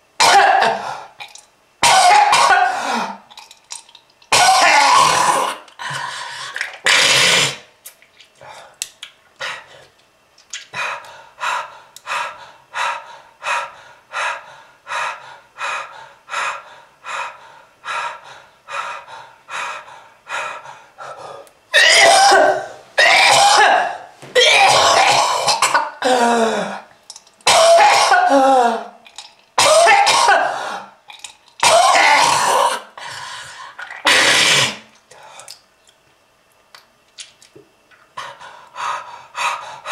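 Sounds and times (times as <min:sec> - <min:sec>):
person coughing: 0:00.2 - 0:00.9, 0:01.8 - 0:03.2, 0:04.3 - 0:05.6, 0:21.8 - 0:26.4, 0:27.5 - 0:28.9, 0:29.6 - 0:30.7, 0:31.6 - 0:32.9.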